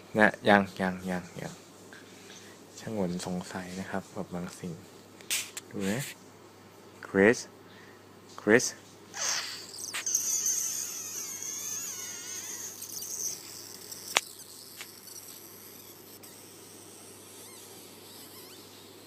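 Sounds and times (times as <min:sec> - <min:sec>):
sharp click: 0:05.2 - 0:05.7, 0:14.0 - 0:15.4
high-pitched squeaky warbling: 0:09.2 - 0:19.0.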